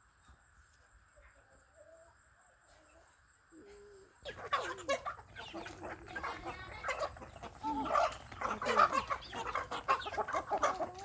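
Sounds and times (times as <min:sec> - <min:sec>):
chickens clucking: 0:04.2 - 0:11.0.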